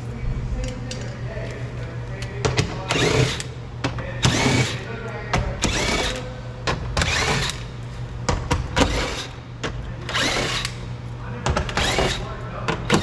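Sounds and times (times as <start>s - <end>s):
power tool whining: 2.9s - 3.6s, 4.2s - 4.9s, 5.6s - 6.3s, 7.0s - 7.7s, 8.8s - 9.4s, 10.1s - 10.8s, 11.7s - 13.0s.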